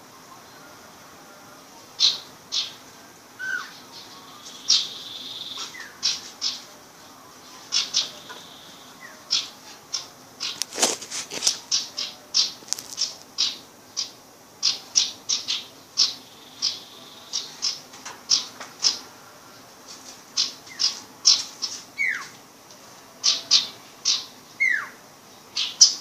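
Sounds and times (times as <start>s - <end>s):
young songbird chirping: 3.4s - 6.6s.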